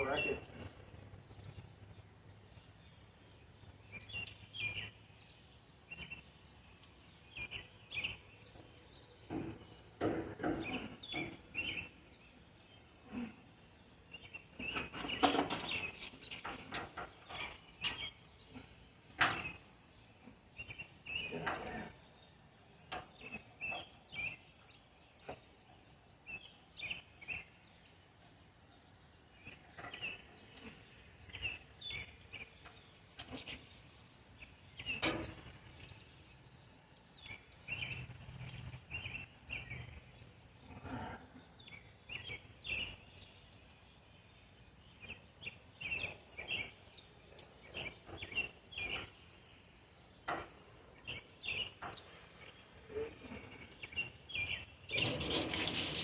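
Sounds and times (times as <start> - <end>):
small birds chirping: 0.0 - 56.0
sharp clicks and light knocks: 22.9 - 23.8.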